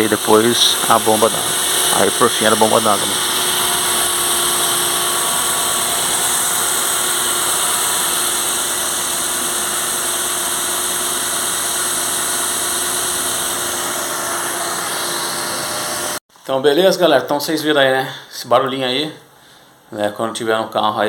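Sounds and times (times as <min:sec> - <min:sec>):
car engine running: 0:00.0 - 0:16.2.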